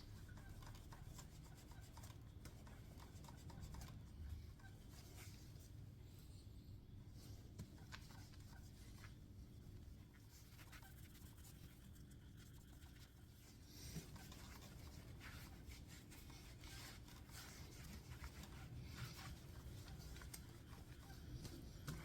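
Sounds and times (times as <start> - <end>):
cloth rubbing on metal: 10.1 - 22.0
light ticks and scrapes: 10.2 - 22.0.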